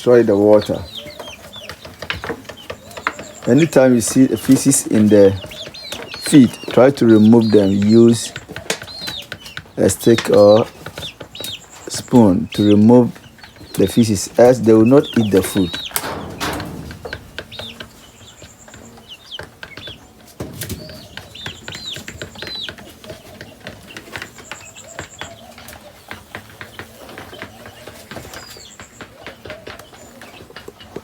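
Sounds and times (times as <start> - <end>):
birds moving on sawdust: 0.0 - 31.0
chickens peeping and calling: 0.0 - 31.0
short high rattle: 15.9 - 17.7.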